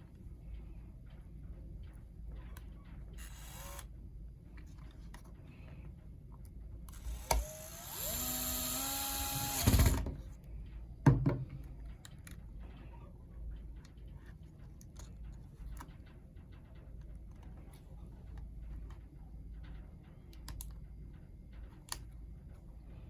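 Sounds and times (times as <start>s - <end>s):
electric screwdriver whirring: 3.2s - 3.9s, 6.9s - 10.1s.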